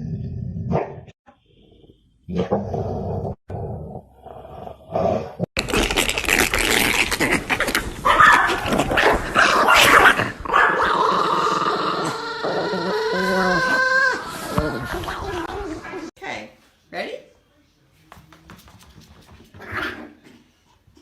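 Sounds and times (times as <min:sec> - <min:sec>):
dog growling and barking: 0:00.0 - 0:01.1, 0:07.0 - 0:16.1.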